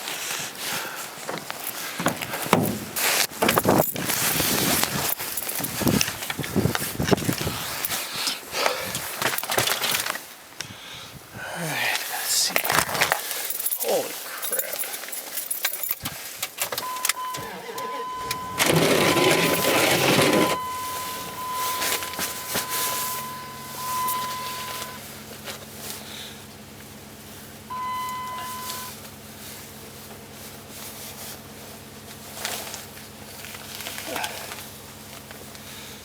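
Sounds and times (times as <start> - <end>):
engine cranking and starting: 15.7 - 26.2
vehicle warning chime: 16.8 - 25.2, 27.7 - 29.1
engine idling: 16.8 - 36.0.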